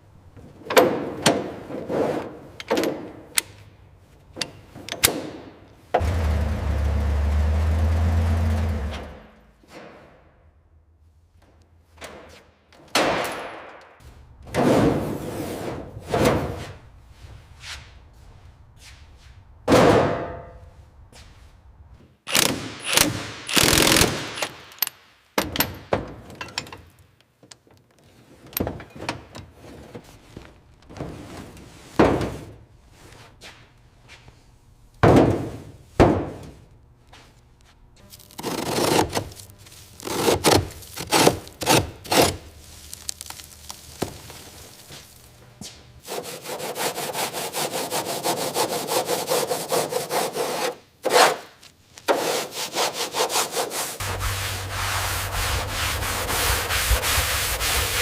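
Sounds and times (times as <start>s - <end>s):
scraping rasping bursts: 22.3s - 24.5s, 38.3s - 39.4s, 40.0s - 43.5s.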